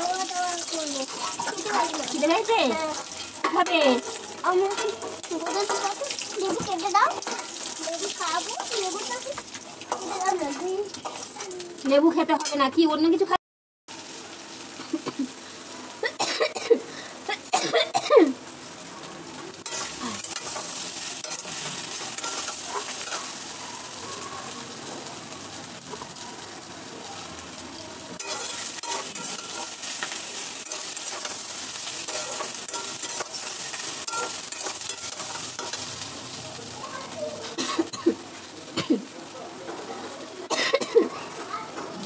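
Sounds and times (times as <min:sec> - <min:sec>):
food sizzling in hot oil: 0:00.0 - 0:42.0.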